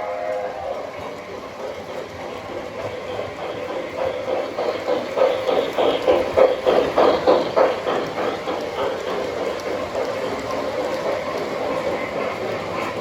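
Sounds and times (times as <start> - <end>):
model train whistle: 0.0 - 1.0
model train rhythmic beat: 0.0 - 13.0.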